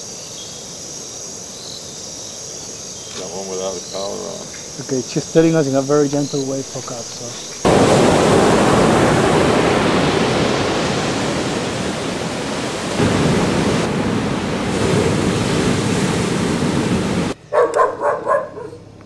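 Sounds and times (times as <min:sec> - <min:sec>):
ocean surf washing ashore: 0:03.1 - 0:17.4.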